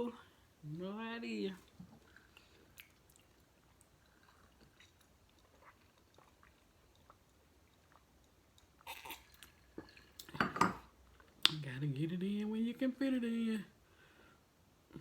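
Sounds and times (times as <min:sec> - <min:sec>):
chewing and mouth sounds: 0:01.6 - 0:10.4.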